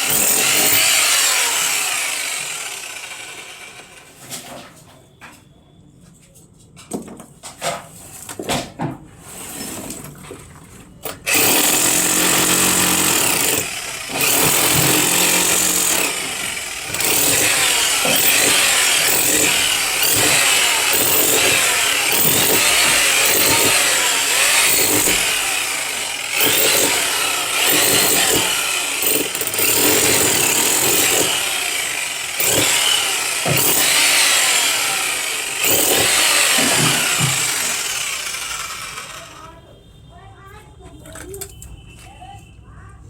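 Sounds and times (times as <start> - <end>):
power tool running loudly: 0.0 - 4.0, 11.0 - 39.4.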